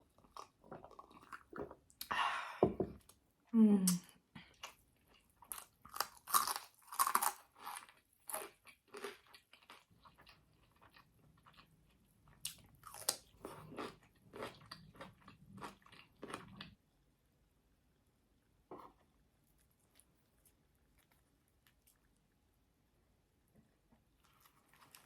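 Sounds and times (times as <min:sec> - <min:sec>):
person crunching chips: 0:05.5 - 0:11.6, 0:12.8 - 0:16.5.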